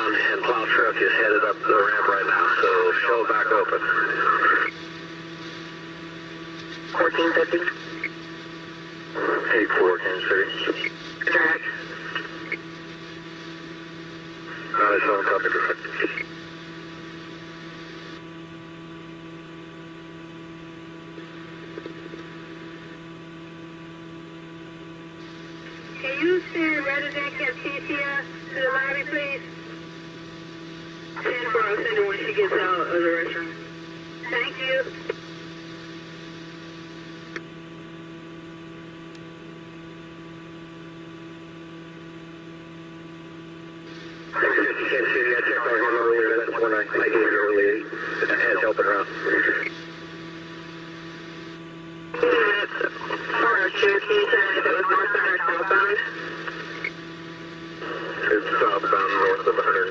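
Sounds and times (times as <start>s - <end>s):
radio scanner hum and hiss: 0.0s - 59.9s
short radio click: 49.4s - 49.8s.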